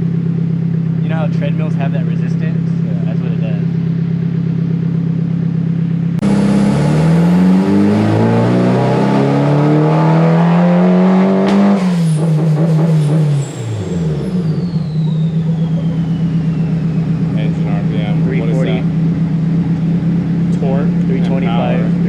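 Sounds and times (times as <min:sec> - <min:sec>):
turbocharged car engine revving: 0:05.8 - 0:22.0.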